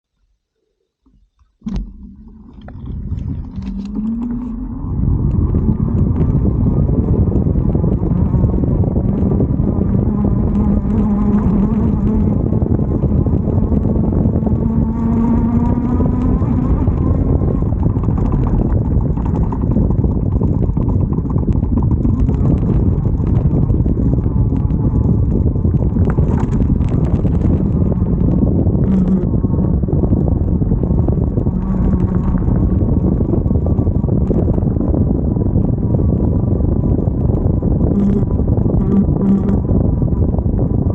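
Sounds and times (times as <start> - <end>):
wind noise on microphone: 1.0 - 40.9
electric motor whining: 1.6 - 35.0, 36.8 - 39.8.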